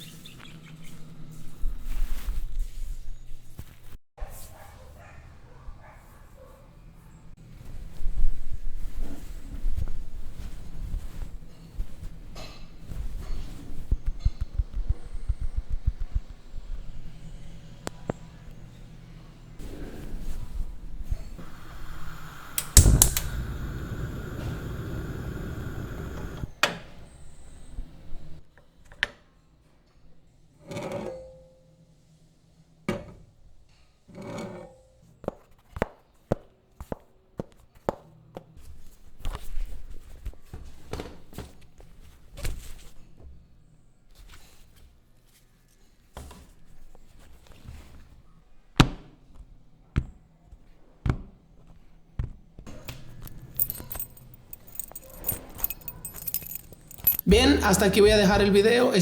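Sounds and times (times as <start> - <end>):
metallic jingling: 53.2 - 59.0
objects knocking and clicking: 53.3 - 58.4.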